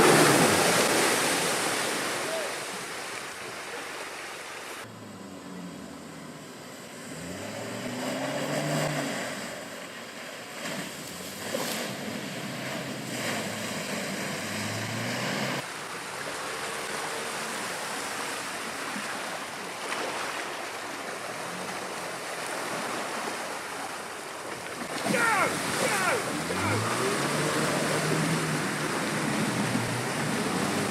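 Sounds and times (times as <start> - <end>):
off-road engine revving: 0.0 - 1.3, 4.8 - 9.8, 10.6 - 15.7, 24.9 - 30.9.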